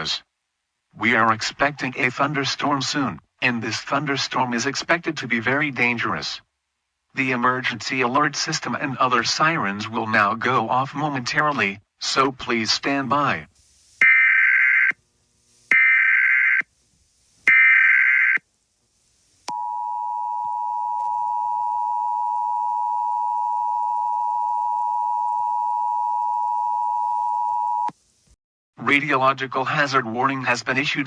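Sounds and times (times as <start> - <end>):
digital data tone bursts: 14.0 - 15.0.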